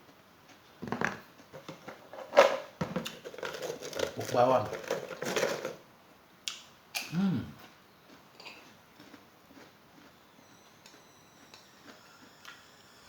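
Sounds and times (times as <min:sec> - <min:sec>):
faint chewing ticks: 0:06.4 - 0:12.6.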